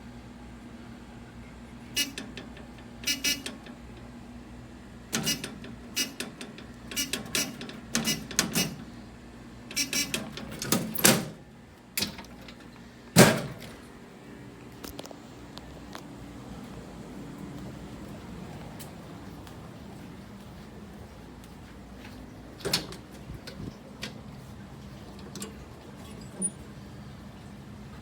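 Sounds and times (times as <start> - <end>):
hardware clicks and clunks: 2.0 - 4.1, 5.1 - 8.9, 9.7 - 13.9, 22.0 - 26.7.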